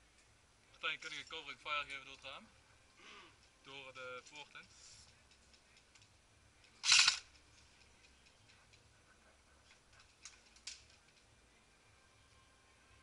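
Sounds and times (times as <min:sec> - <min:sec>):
sharp clicks: 0:05.3 - 0:08.8.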